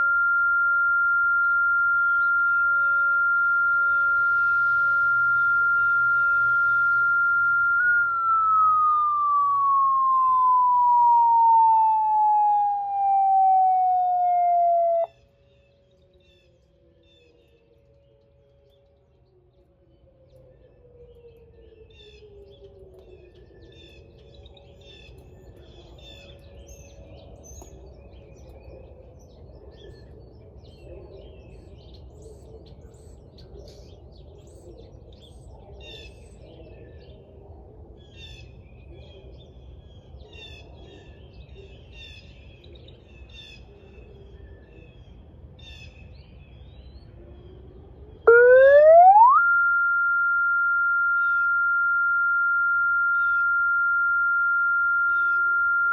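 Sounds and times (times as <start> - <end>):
electronic police siren: 0.0 - 15.1, 48.3 - 55.9
faint gliding tone: 0.0 - 15.1, 48.3 - 55.9
birds chirping: 48.3 - 55.9.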